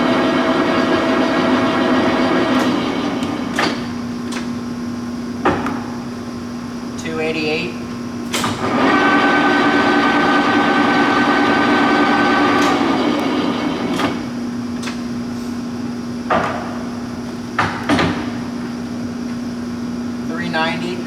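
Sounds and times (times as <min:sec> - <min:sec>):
lathe gear whine: 0:00.0 - 0:16.2
motor hum: 0:00.0 - 0:20.2.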